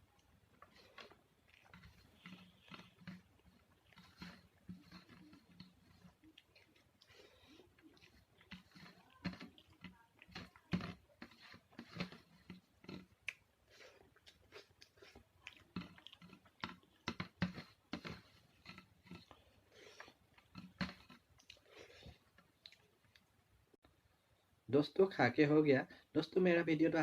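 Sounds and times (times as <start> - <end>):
man chewing food: 0.0 - 24.6.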